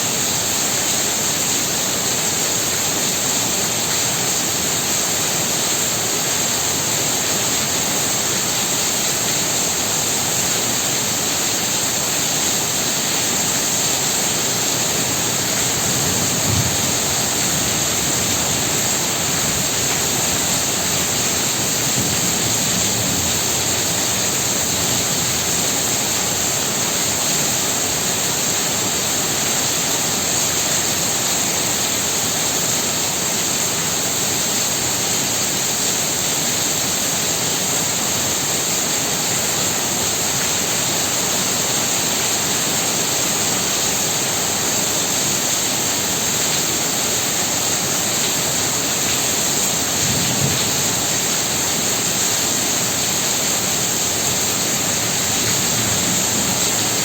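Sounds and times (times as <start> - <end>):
heavy rain pouring: 0.0 - 57.0.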